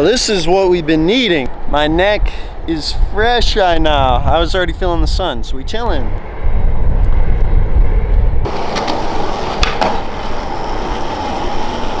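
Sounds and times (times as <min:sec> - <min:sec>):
low rumble: 0:05.9 - 0:08.5
skateboard wheels rolling on concrete: 0:08.4 - 0:12.0
skateboard clacks: 0:08.5 - 0:12.0.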